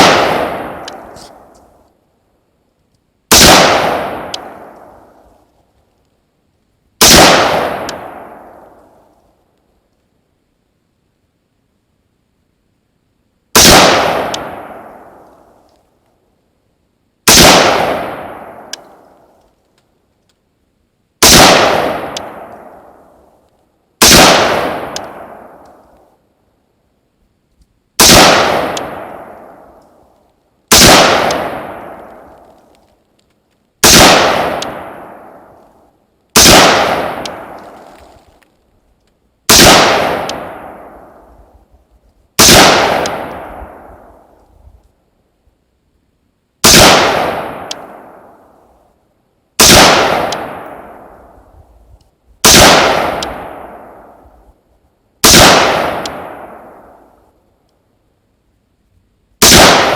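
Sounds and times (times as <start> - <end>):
rifle shots with echo: 0.0 - 1.8, 3.3 - 5.3, 7.0 - 9.1, 13.6 - 15.7, 17.2 - 19.3, 21.2 - 23.3, 24.0 - 26.0, 28.0 - 30.0, 30.7 - 32.7, 33.8 - 35.7, 36.4 - 38.3, 39.5 - 41.3, 42.4 - 44.4, 46.6 - 48.7, 49.6 - 51.5, 52.4 - 54.5, 55.2 - 57.2, 59.4 - 59.9.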